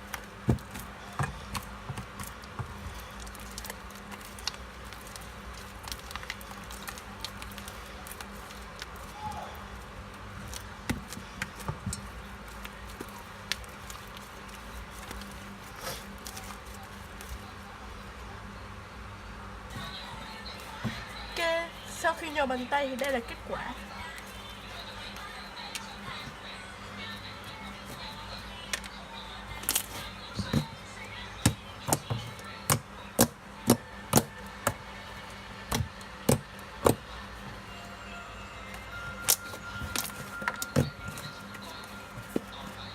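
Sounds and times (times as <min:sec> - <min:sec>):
slime squishing: 0:00.0 - 0:17.6.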